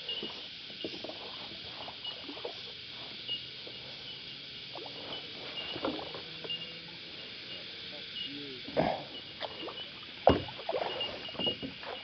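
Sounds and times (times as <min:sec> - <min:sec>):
small ticks and knocks: 0:00.0 - 0:04.0, 0:09.2 - 0:12.0
cicadas droning: 0:00.0 - 0:12.0
faint chirps: 0:00.0 - 0:12.0.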